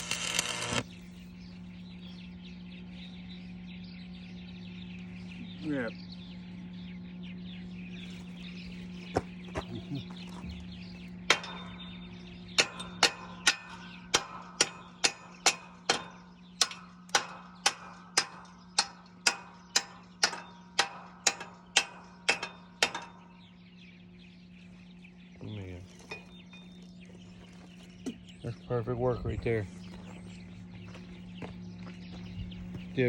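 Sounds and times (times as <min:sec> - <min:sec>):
steady low hum: 0:00.0 - 0:33.0
hammer striking steel: 0:11.3 - 0:12.0, 0:12.6 - 0:23.4.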